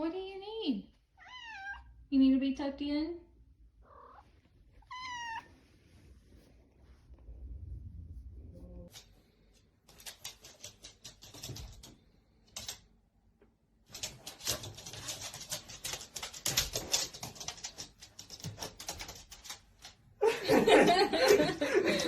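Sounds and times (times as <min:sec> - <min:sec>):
crackling scratching clicks: 0:09.8 - 0:12.9, 0:13.9 - 0:20.0.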